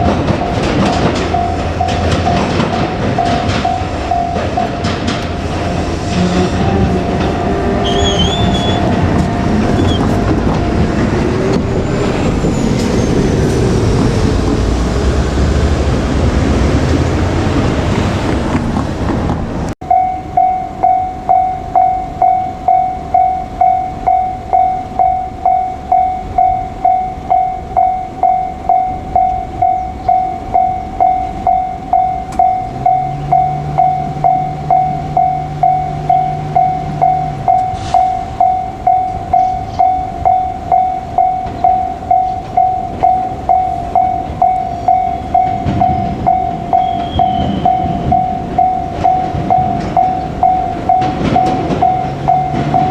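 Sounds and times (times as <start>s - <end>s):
level-crossing warning bell ringing: 0.0s - 15.1s, 19.8s - 52.9s.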